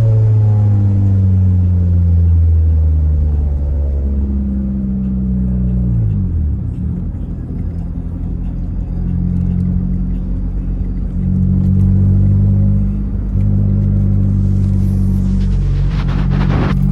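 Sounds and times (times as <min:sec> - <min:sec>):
short rushing noise: 0:14.1 - 0:16.9.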